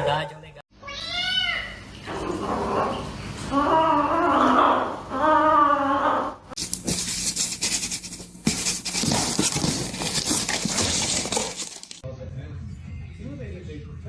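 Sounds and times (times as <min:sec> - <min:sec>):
cat meowing: 0:00.8 - 0:01.8.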